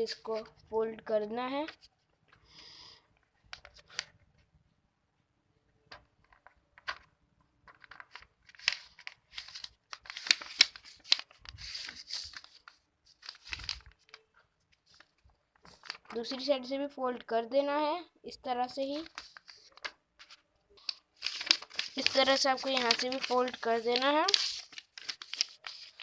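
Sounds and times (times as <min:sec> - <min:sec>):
paper crinkling and rustling: 0:03.4 - 0:04.2, 0:05.9 - 0:16.6, 0:18.8 - 0:26.0.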